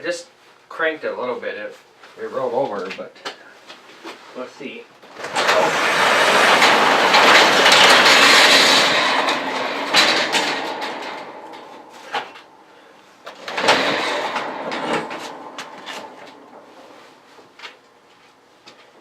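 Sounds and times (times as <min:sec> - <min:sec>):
engine cranking by starter: 0:05.0 - 0:12.7, 0:13.3 - 0:17.2.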